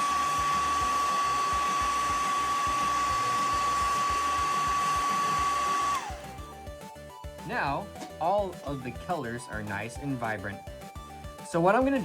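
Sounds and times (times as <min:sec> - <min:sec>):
hair dryer blowing: 0:00.0 - 0:06.6.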